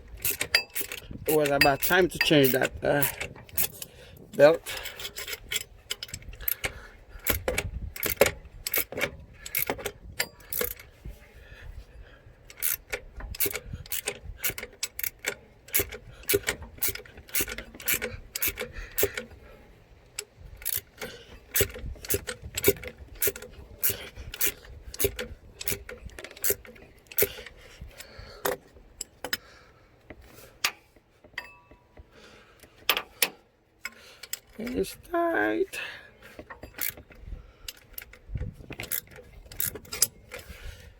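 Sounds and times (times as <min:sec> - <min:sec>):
hand ratchet clicking: 0:00.1 - 0:10.9, 0:12.4 - 0:19.4, 0:20.2 - 0:29.4, 0:32.6 - 0:34.9, 0:36.4 - 0:40.6
metal clinks: 0:00.2 - 0:03.9.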